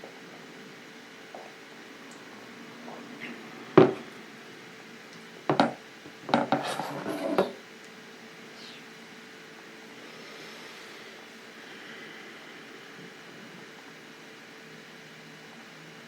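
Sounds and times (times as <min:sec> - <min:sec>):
hard objects clattering: 0:05.5 - 0:07.6.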